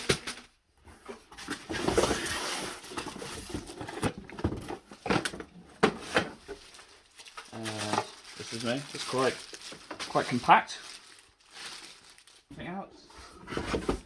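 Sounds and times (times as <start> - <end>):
packaging rustling: 1.3 - 12.5.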